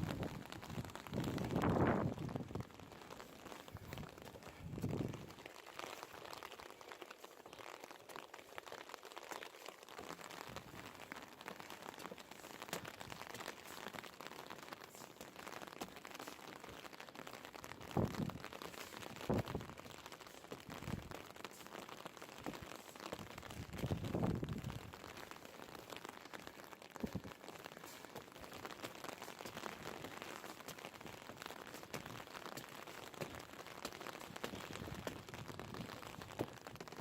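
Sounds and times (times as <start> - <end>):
rain pattering: 0.0 - 37.0.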